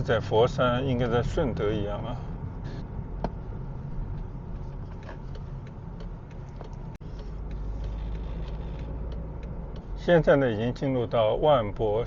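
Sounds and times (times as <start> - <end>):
car engine and tyres rumbling: 0.0 - 12.0
light ticks: 4.6 - 10.4.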